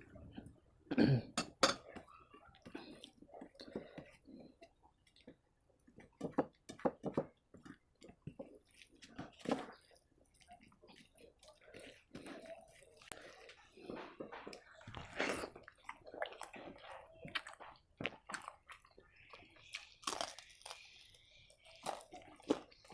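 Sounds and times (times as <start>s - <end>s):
wet chewing and mouth smacks: 1.8s - 22.9s.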